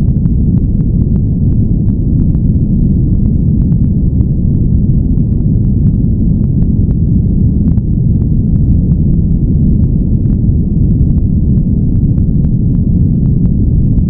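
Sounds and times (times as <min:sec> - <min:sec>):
dark rumbly noise: 0:00.0 - 0:14.0.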